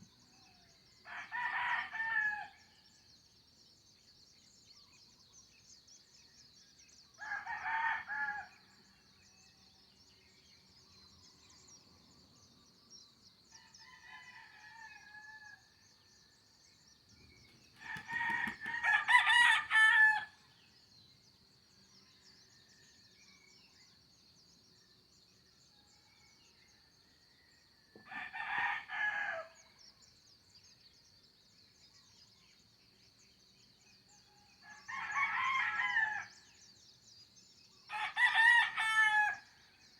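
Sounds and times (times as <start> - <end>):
rooster crowing: 17.8 - 20.4, 34.7 - 36.3, 37.9 - 39.4.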